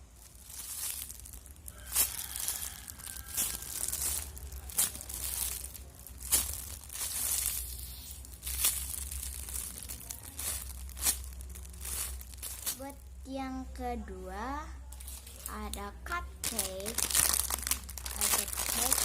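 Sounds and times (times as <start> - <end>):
plastic crinkling: 0.0 - 13.2, 14.9 - 19.0.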